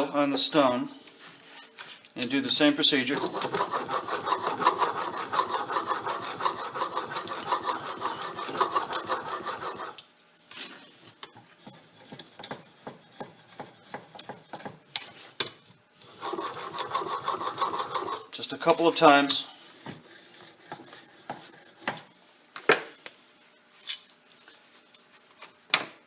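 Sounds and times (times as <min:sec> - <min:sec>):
chisel scraping on honing stone: 0:03.1 - 0:10.0, 0:16.2 - 0:18.3.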